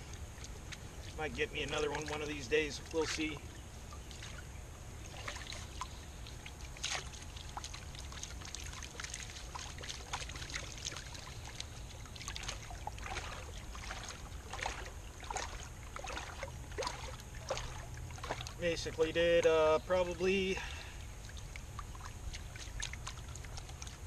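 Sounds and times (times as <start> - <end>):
water and gravel sloshing: 0.0 - 24.0.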